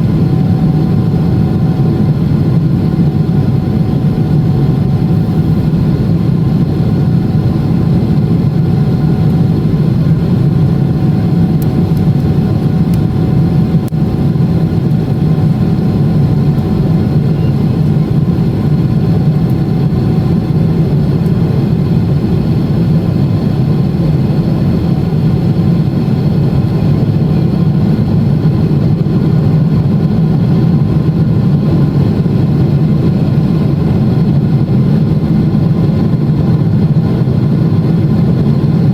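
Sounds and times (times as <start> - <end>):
faint steady whine: 0.0 - 23.0
jet engine drone in cabin: 0.0 - 38.9.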